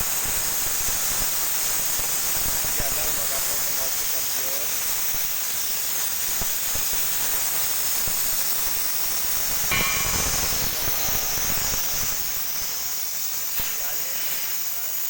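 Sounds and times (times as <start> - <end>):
metallic clink: 9.7 - 12.4
gas hissing from cylinder valve: 9.7 - 15.0.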